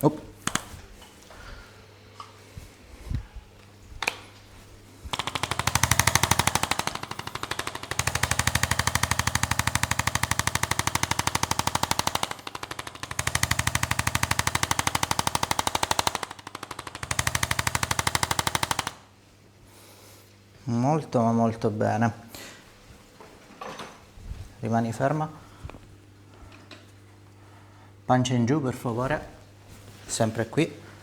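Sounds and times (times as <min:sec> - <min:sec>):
massage gun running: 0:00.4 - 0:01.1, 0:03.8 - 0:19.2.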